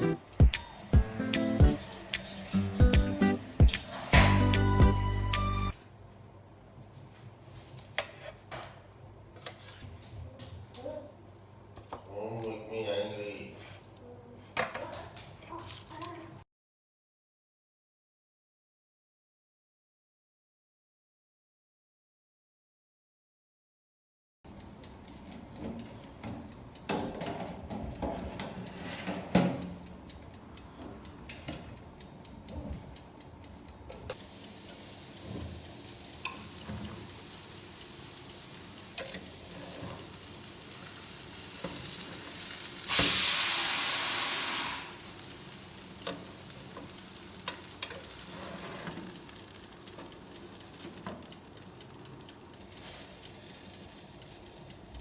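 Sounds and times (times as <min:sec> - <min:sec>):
chicken sizzling in frying: 0:34.1 - 0:55.0.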